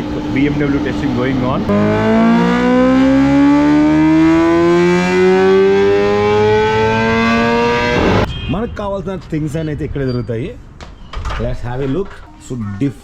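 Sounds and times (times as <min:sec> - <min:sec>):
motorcycle engine revving under load: 0:01.6 - 0:08.3.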